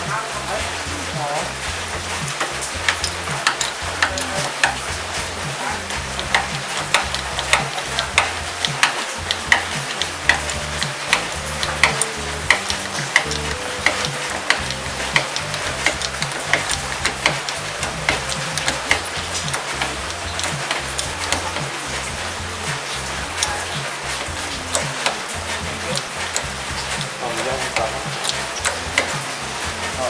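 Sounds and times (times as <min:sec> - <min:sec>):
background music with ticking beat: 0:00.0 - 0:30.0.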